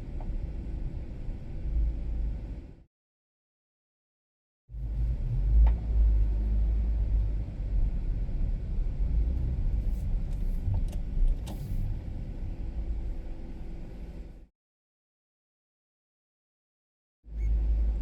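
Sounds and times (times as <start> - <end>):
car engine and road noise: 0.0 - 2.8, 4.7 - 14.5, 17.3 - 18.0.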